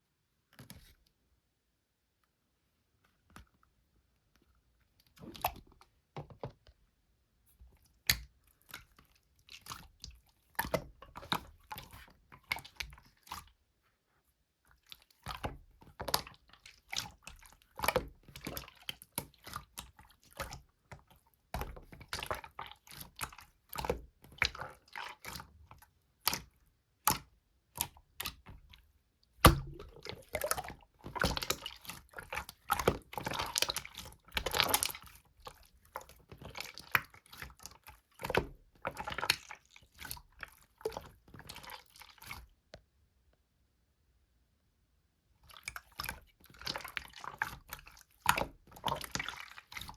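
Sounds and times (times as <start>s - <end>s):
slime squishing and popping: 29.4s - 35.1s.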